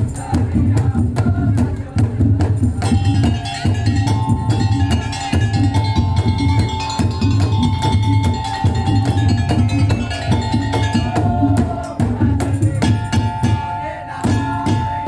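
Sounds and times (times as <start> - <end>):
drums playing fast beat: 0.0 - 15.0
heavy bass drum: 0.0 - 15.0
held melodic line: 3.2 - 11.9.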